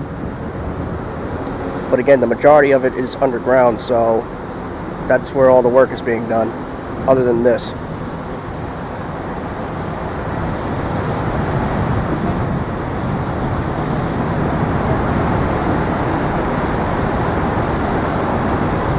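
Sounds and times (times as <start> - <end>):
road traffic passing: 0.0 - 18.9.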